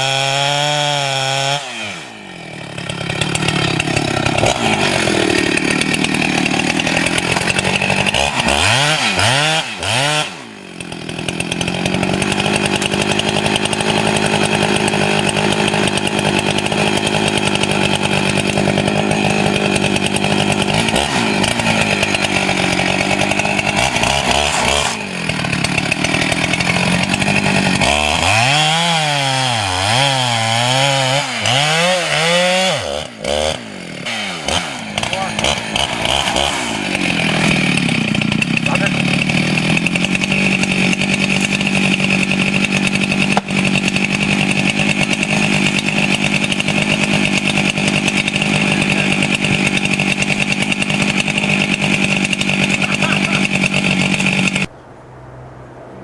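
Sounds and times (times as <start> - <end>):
chainsaw cutting wood: 0.0 - 54.7.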